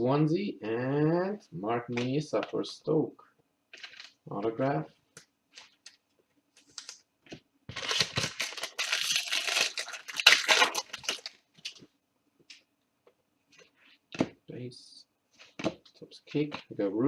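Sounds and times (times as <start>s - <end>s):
wrapper tearing and crinkling: 3.8s - 4.2s, 7.7s - 11.8s.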